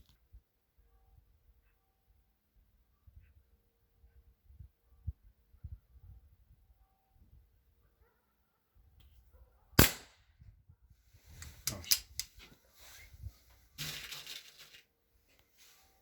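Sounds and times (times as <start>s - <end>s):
air pistol shot: 9.8s - 10.2s
rustling handling noise: 11.2s - 16.0s.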